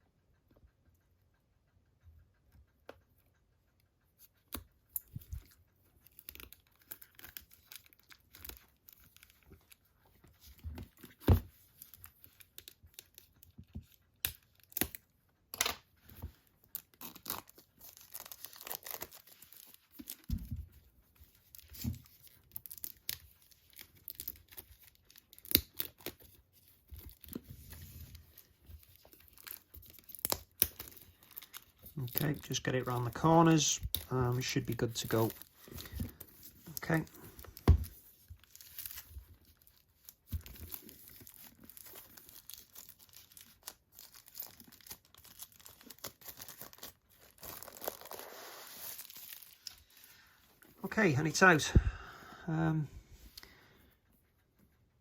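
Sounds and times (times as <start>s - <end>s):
plastic wrapping torn and crinkled: 6.1s - 9.7s, 16.6s - 20.6s, 21.3s - 50.7s.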